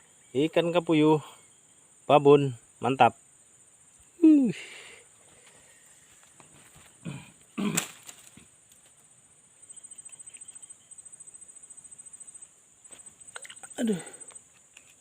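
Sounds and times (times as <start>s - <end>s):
insects shrilling: 0.0s - 15.0s.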